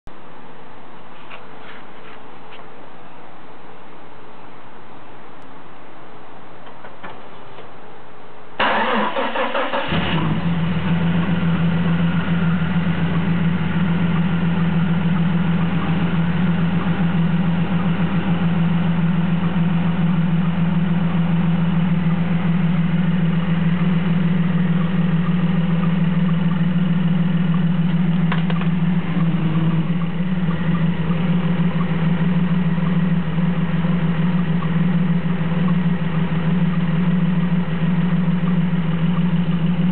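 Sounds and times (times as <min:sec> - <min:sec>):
car engine cranking: 0:08.6 - 0:39.9
engine idling with misfire: 0:08.6 - 0:39.9.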